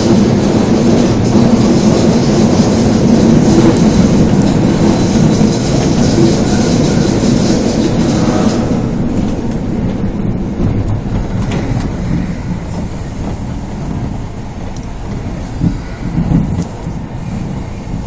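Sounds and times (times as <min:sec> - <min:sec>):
train wheels on rails: 0:00.0 - 0:18.0.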